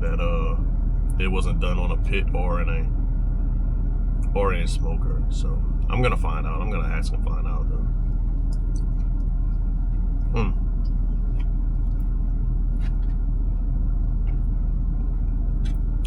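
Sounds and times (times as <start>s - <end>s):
vehicle engine idling: 0.0s - 16.0s.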